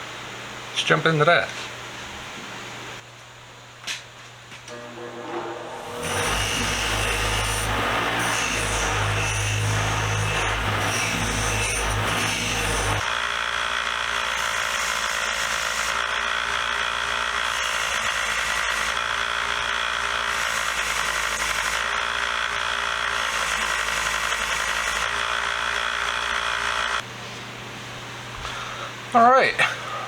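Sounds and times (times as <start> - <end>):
power tool running under load: 4.7 - 27.1.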